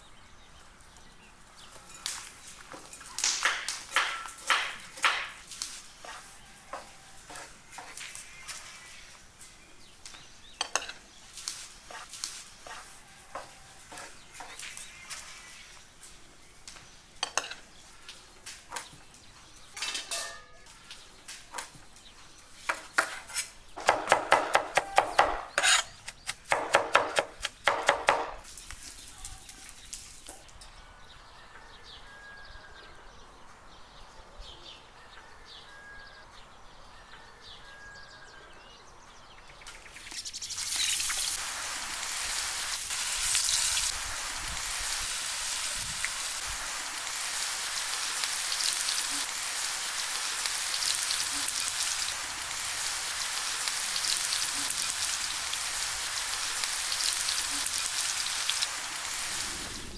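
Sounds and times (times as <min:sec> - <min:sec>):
food sizzling in hot oil: 0:10.7 - 0:16.0, 0:39.9 - 0:59.9
utensils scraping cookware: 0:25.0 - 0:26.3.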